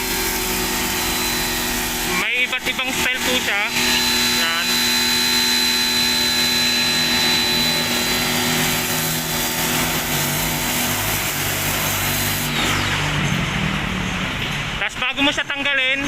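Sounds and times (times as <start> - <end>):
pressure washer motor humming: 0.0 - 13.6
high whine: 0.0 - 14.4
water spray hiss: 8.5 - 12.5.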